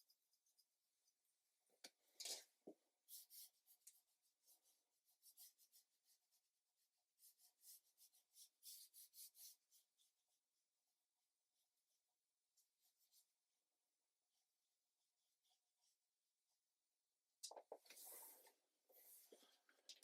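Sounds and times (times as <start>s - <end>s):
paintbrush scratching on paper: 2.5s - 13.4s, 17.9s - 19.5s.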